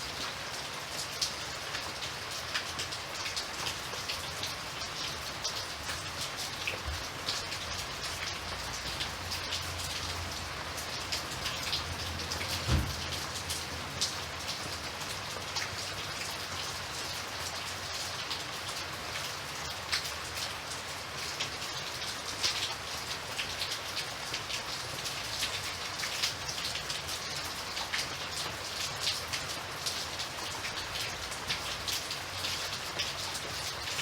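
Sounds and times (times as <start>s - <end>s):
rain drops ticking on a surface: 0.0s - 34.0s
low thump: 12.6s - 13.1s.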